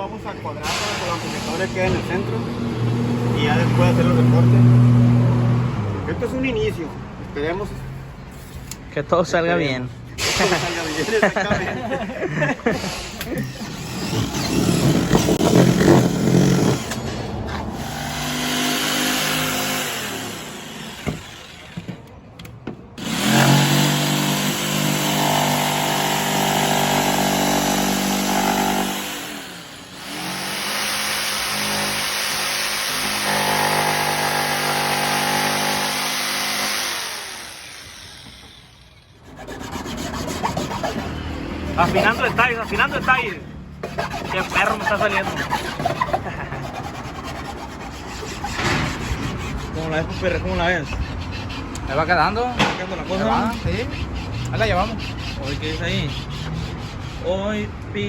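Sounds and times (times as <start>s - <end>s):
electric saw cutting wood: 13.5s - 21.9s, 23.0s - 52.3s.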